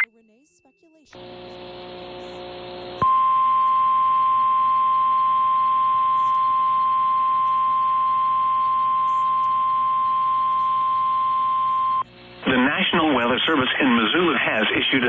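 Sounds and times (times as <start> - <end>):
faint radio hiss: 0.0 - 3.8, 4.7 - 15.0
steady alarm tone: 3.0 - 12.0.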